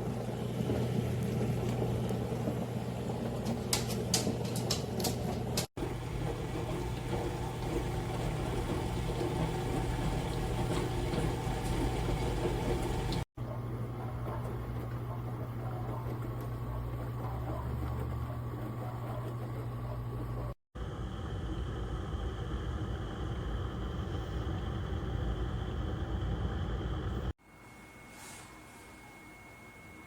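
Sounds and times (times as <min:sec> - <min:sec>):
dishwasher motor hum: 0:00.0 - 0:27.9
water spraying and sloshing: 0:05.8 - 0:13.3.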